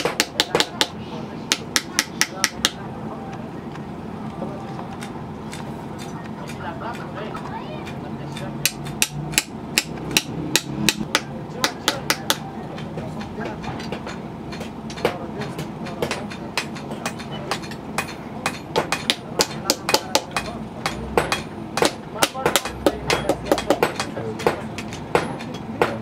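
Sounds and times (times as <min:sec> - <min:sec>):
hammer striking metal on anvil: 0:00.0 - 0:02.8, 0:05.0 - 0:12.5, 0:13.2 - 0:26.0.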